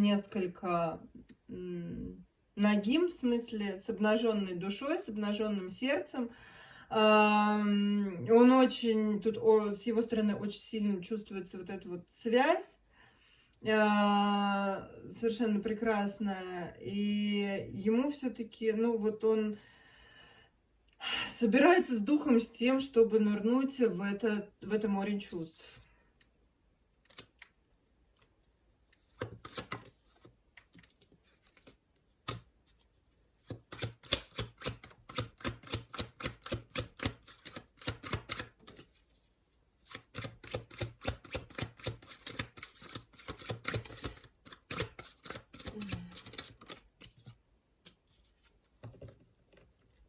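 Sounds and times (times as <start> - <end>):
cards being shuffled: 27.0 - 39.2, 39.8 - 49.2
paper rustle: 28.1 - 33.6.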